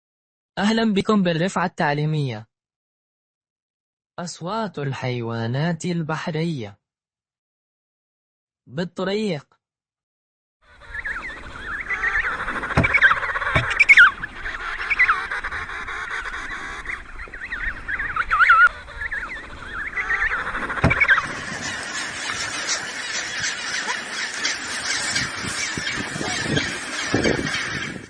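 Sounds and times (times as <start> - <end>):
penguins honking and braying: 10.8 - 28.0.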